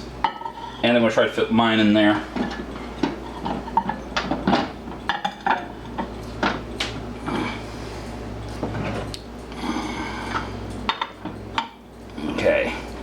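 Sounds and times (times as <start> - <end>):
cups scraping: 2.0 - 6.2
cups clinking: 2.4 - 6.6.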